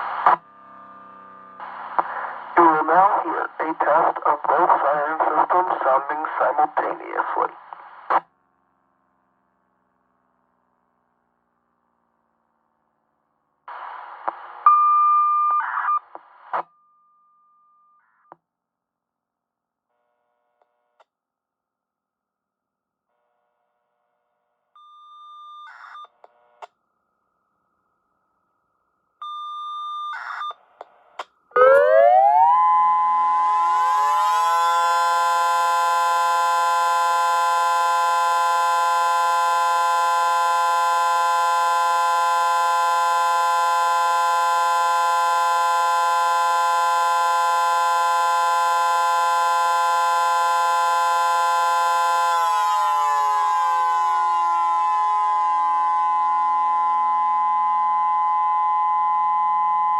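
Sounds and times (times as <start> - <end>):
mechanical siren: 0.2 - 2.0, 31.5 - 59.9
electronic siren: 0.2 - 2.1, 31.5 - 59.9.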